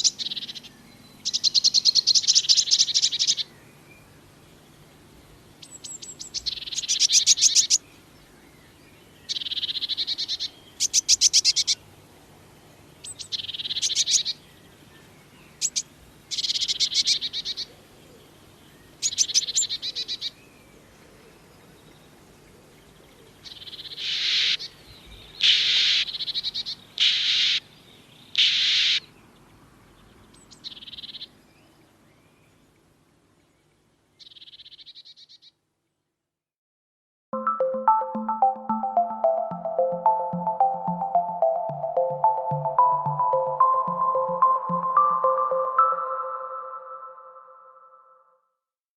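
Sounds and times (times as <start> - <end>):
bird buzzy clicking calls: 5.6 - 7.8, 23.5 - 24.7, 25.4 - 27.7, 28.3 - 29.1.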